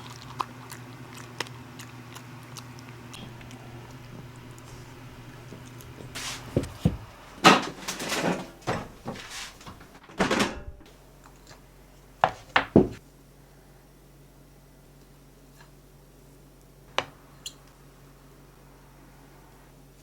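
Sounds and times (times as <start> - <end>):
objects knocking and clattering: 5.5 - 10.9, 12.3 - 13.0.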